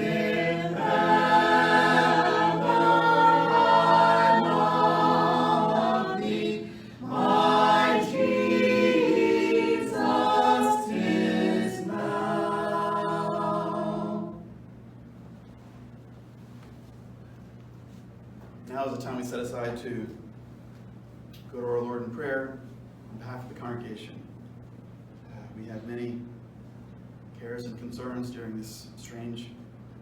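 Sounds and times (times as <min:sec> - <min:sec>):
voices singing a hymn a cappella: 0:00.0 - 0:14.6
faint low hum: 0:00.0 - 0:30.0.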